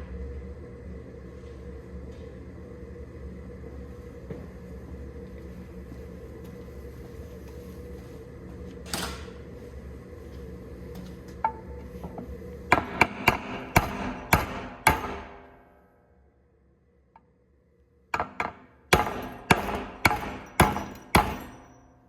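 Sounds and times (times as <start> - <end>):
low machine hum: 0.0 - 22.0
hammer striking metal: 12.7 - 15.6, 18.2 - 21.9.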